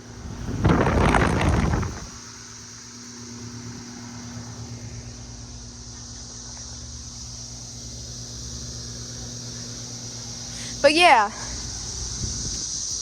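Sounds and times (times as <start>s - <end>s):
compressor humming: 0.0s - 13.0s
condenser fan rushing: 0.0s - 13.0s.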